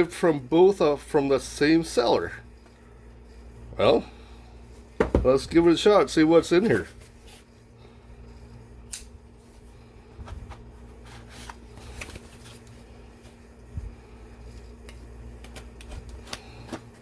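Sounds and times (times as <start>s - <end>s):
packaging rustling and scraping: 9.4s - 13.5s, 14.4s - 17.0s.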